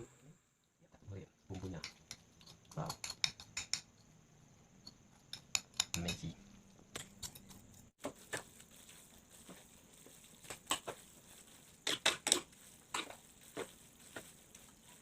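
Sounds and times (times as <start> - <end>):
utensil scraping cookware: 11.7 - 15.0.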